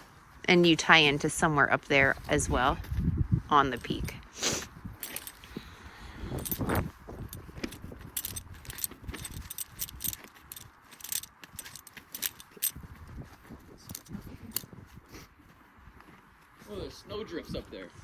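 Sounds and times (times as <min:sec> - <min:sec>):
rustle: 0:03.8 - 0:16.9
metal climbing gear jangling: 0:04.9 - 0:15.0.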